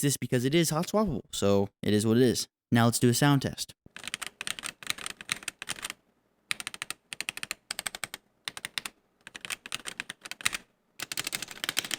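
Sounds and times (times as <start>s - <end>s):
mechanical keyboard typing: 3.9s - 11.9s.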